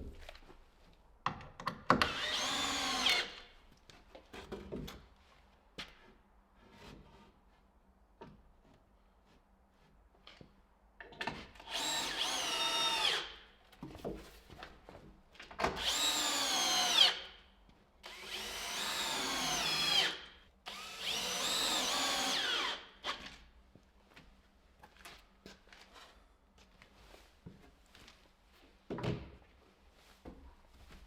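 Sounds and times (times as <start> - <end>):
power drill whine: 2.1 - 3.4, 11.7 - 13.4, 15.8 - 17.2, 18.1 - 23.2.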